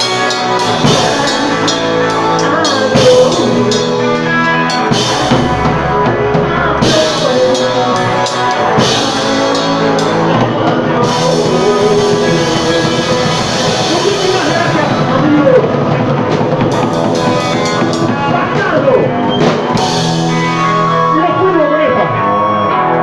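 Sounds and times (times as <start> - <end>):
loud rock music: 0.0 - 23.0.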